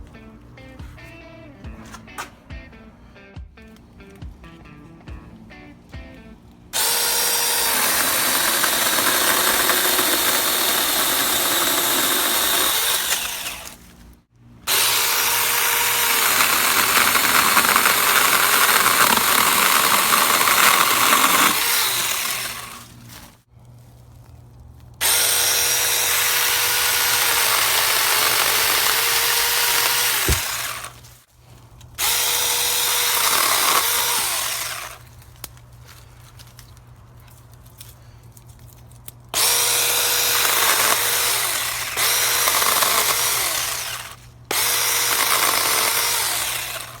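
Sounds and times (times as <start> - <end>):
electric chainsaw cutting wood: 6.7 - 23.4, 25.0 - 31.2, 32.0 - 35.2, 39.3 - 47.0.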